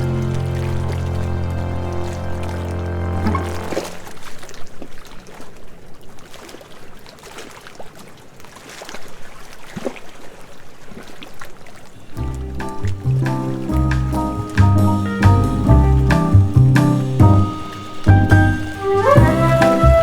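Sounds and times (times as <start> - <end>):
background music: 0.0 - 4.0, 12.2 - 20.0
small water splashes: 0.0 - 15.2
sea water lapping at shore: 0.0 - 20.0.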